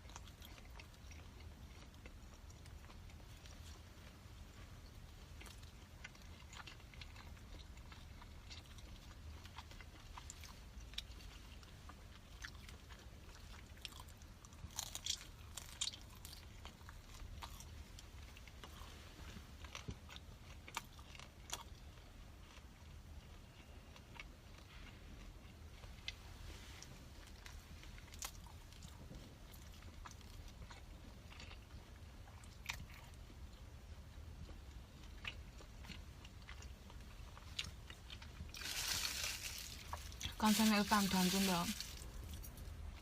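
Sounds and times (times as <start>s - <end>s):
person chewing food: 0.0s - 41.0s
crunchy bites: 13.7s - 17.7s.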